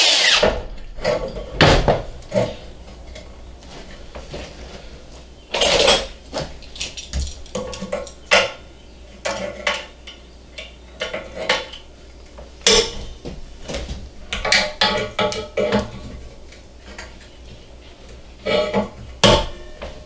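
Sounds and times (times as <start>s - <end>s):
metal parts clanking: 5.5s - 8.6s.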